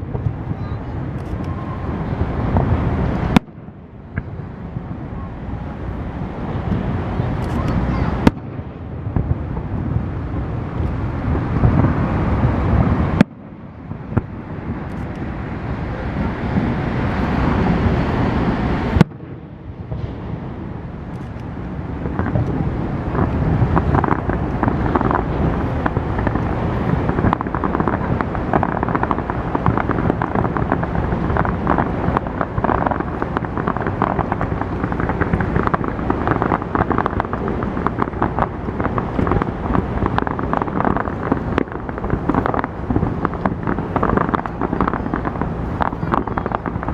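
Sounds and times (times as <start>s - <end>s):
wind buffeting microphone: 0.0s - 46.9s
dense rapid crackling: 22.1s - 46.9s.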